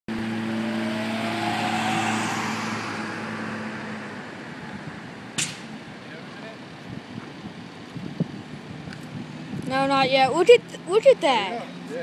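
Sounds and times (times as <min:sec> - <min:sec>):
rushing noise: 0:00.1 - 0:05.3
engine humming: 0:00.1 - 0:11.0.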